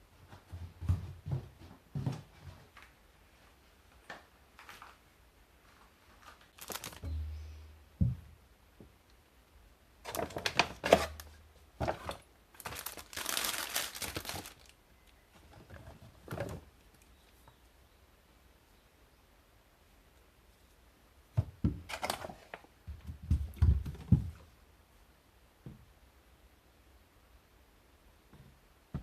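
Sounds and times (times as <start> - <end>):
rustling and crinkling: 0.2 - 7.4, 10.0 - 17.6.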